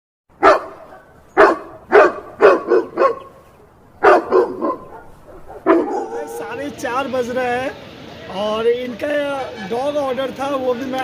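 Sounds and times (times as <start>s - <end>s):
dog barking: 0.4s - 3.4s, 4.0s - 6.5s.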